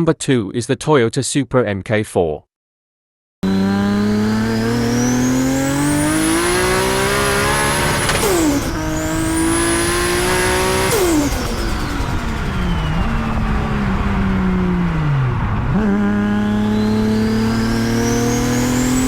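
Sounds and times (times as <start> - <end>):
car engine accelerating hard: 3.4 - 19.0
turbo whistle: 11.4 - 14.0.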